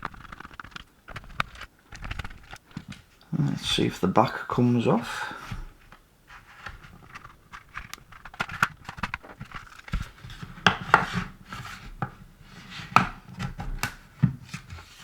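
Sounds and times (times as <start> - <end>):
plastic casing clicks and scrapes: 0.0 - 3.0, 5.9 - 12.1.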